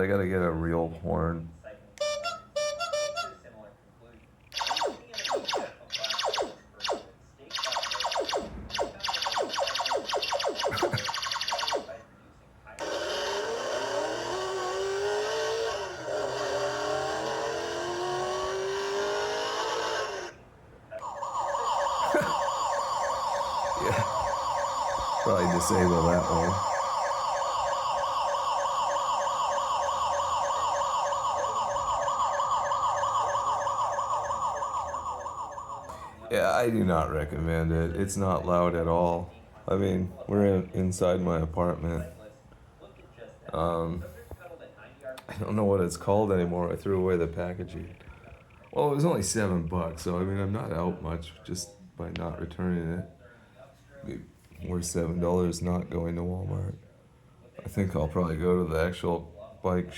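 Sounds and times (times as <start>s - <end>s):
electronic bicycle horn warble: 2.0s - 3.4s
electronic pew tones: 4.6s - 11.9s.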